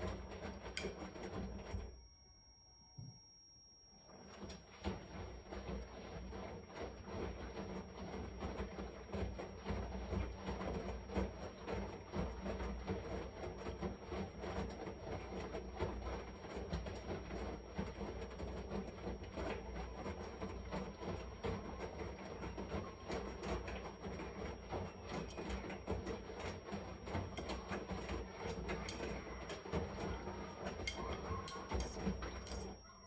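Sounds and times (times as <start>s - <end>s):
washing machine drum churning: 0.0s - 2.0s, 4.1s - 33.0s
thin high whine: 0.0s - 10.3s, 18.7s - 33.0s.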